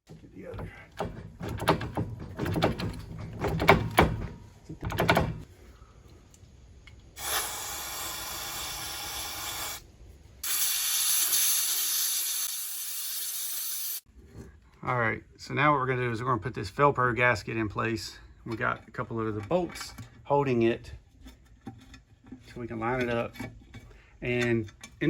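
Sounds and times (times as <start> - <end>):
sharp clicks and knocks: 0.0 - 5.5
hissing spray: 7.2 - 9.8, 10.4 - 14.0.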